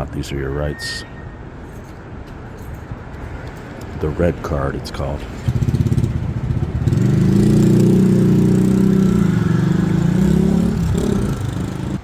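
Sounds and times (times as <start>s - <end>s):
vehicle engine running: 5.2s - 12.0s.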